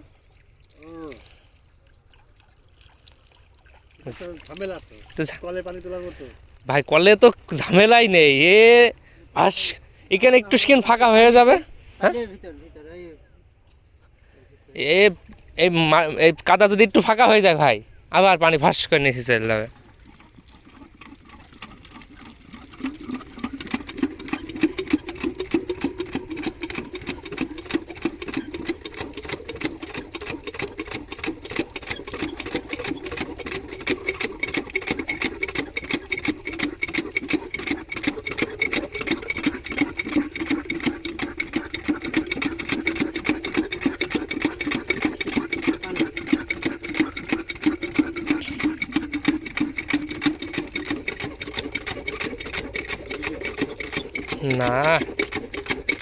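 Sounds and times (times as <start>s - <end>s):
diesel engine clattering: 21.0s - 56.0s.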